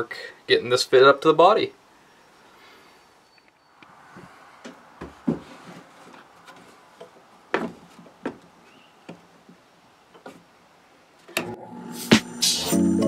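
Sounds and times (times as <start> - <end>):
music: 11.4 - 13.0.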